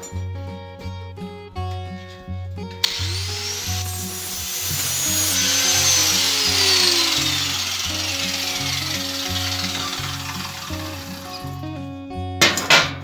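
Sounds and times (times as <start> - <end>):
angle grinder grinding steel: 2.8 - 11.8.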